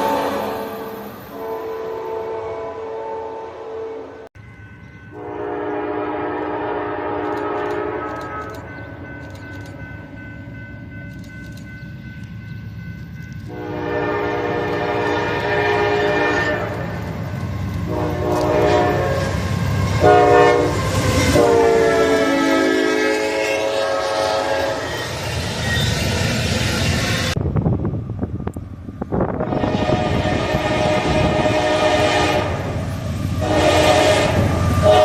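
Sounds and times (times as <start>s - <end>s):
train rumble and wheel clatter: 0.0s - 2.8s, 4.1s - 35.0s
pitched-down train horn blasts: 0.0s - 4.3s, 5.1s - 9.8s, 13.4s - 25.2s, 29.1s - 35.0s.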